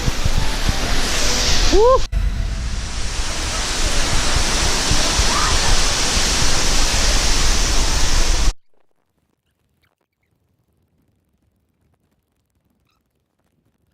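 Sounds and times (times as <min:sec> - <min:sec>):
waterfall rushing: 0:00.0 - 0:08.6.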